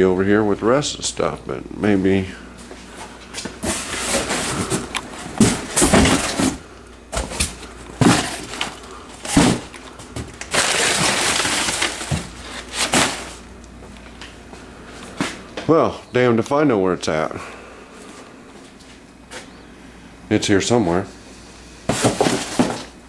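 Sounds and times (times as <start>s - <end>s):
packaging rustling: 3.4s - 13.5s, 21.9s - 23.0s.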